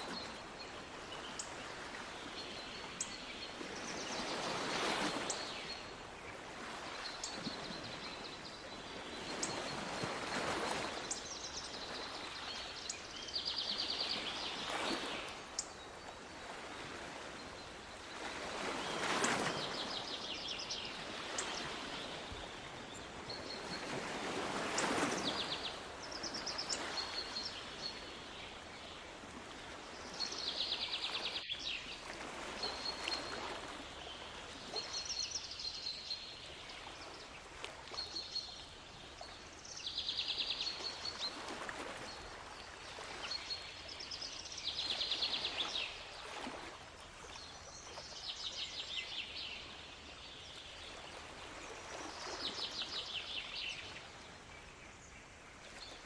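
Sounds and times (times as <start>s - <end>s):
waves washing in: 0.0s - 12.9s, 13.5s - 35.6s.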